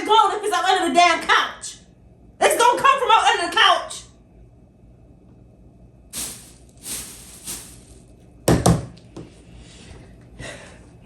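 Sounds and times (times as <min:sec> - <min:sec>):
rustling handling noises: 0:06.2 - 0:08.1.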